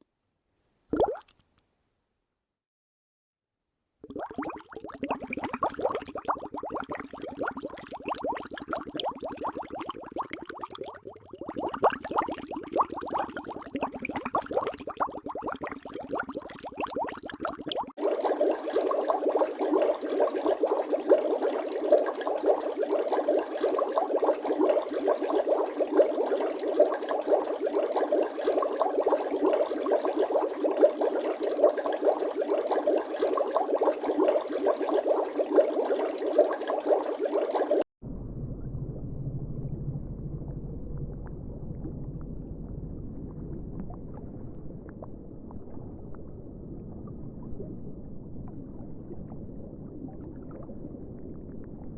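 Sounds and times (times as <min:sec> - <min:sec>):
deeper quieter bubbling: 0:00.9 - 0:01.3, 0:04.0 - 0:51.9
water bubbling densely: 0:04.0 - 0:37.9.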